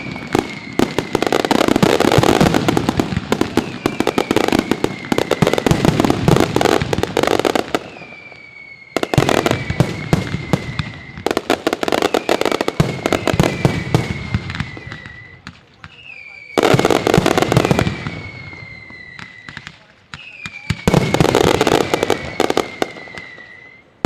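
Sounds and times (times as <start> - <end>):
firecrackers banging: 0.0 - 24.0
high whistle sliding down: 7.9 - 16.7, 18.0 - 19.6, 20.2 - 23.9.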